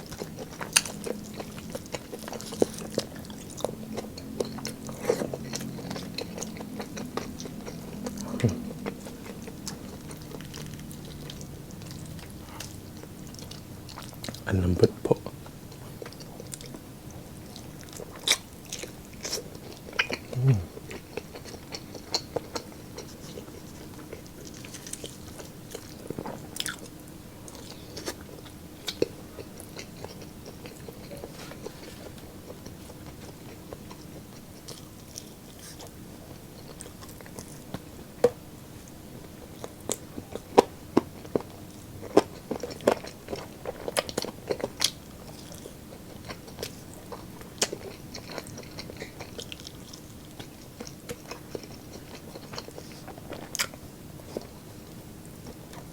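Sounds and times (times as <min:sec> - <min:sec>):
faint steady hum: 0:00.0 - 0:55.9
person chewing food: 0:00.0 - 0:55.9
wet mouth sounds: 0:07.2 - 0:09.4, 0:20.0 - 0:21.0.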